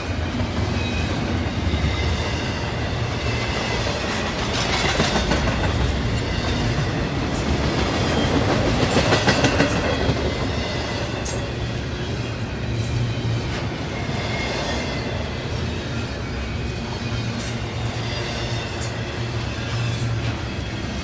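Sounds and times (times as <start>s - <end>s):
wheels clacking over rail joints: 0.0s - 11.7s
freight train rumbling past: 0.0s - 21.0s.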